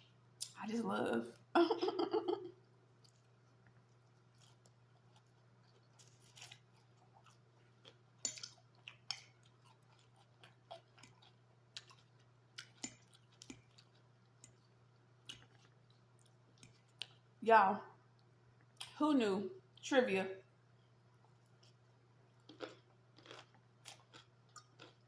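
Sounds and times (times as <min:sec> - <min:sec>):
faint low hum: 0:00.0 - 0:25.0
chewing crunchy salad: 0:02.9 - 0:17.4, 0:21.2 - 0:25.0.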